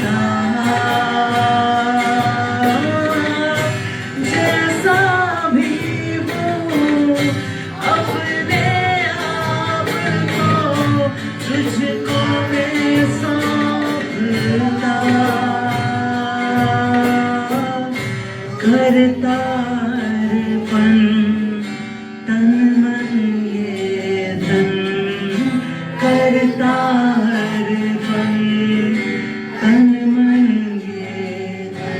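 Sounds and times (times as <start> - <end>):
steady beat: 0.0 - 18.6
guitar: 0.0 - 31.9
person singing worship song: 0.0 - 31.9.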